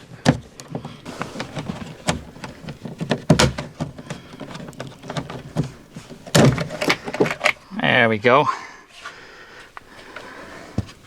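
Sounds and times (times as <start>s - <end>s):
plastic trim clicking and scraping: 0.2s - 7.6s.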